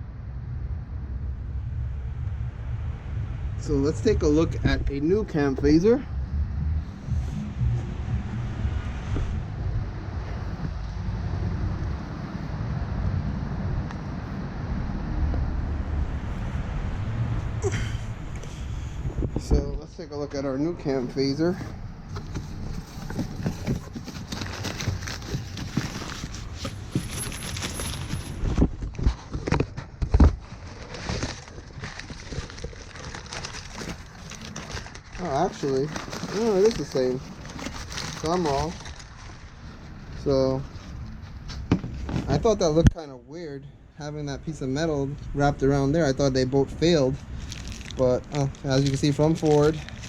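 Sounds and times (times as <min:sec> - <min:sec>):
low rumbling background noise: 0:00.0 - 0:50.0
packaging rustling and crackling: 0:22.1 - 0:40.3, 0:47.2 - 0:50.0.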